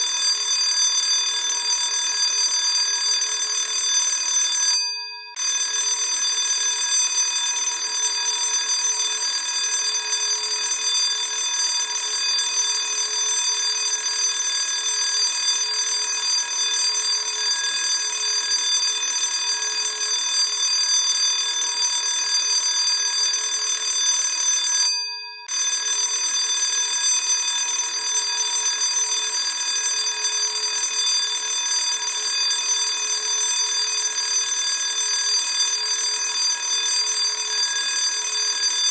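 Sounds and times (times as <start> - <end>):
school bell ringing: 15.6 - 20.3, 27.8 - 38.9.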